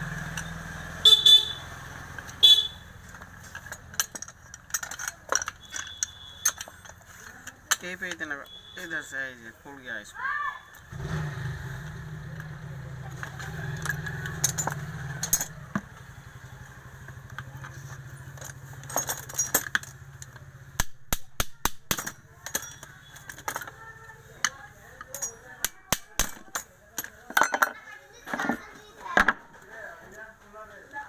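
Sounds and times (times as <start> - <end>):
vehicle engine humming: 0.0 - 7.7, 10.7 - 20.8
metal parts clicking and knocking: 2.1 - 8.6, 13.1 - 29.6.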